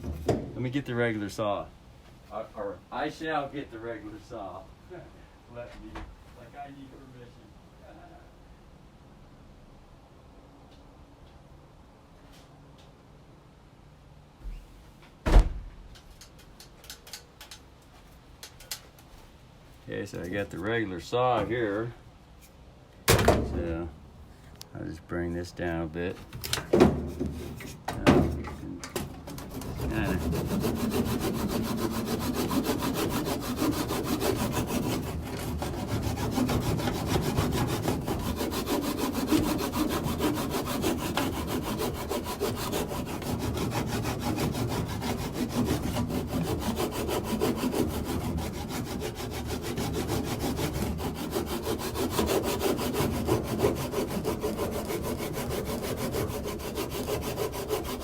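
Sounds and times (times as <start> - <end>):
hand saw cutting wood: 29.2 - 58.0.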